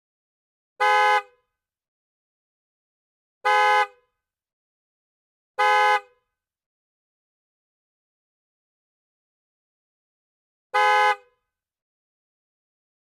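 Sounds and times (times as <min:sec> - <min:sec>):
car horn blasts: 0:00.8 - 0:01.5, 0:03.4 - 0:04.1, 0:05.6 - 0:06.3, 0:10.7 - 0:11.4.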